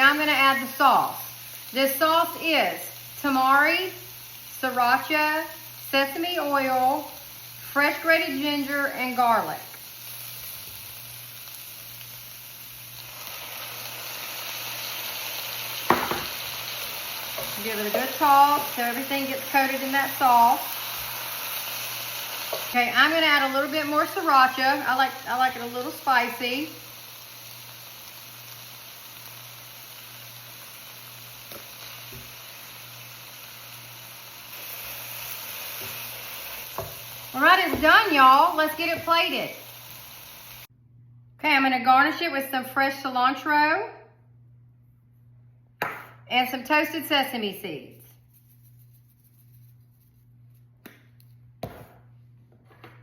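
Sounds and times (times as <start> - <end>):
food sizzling in hot oil: 0.0 - 40.7.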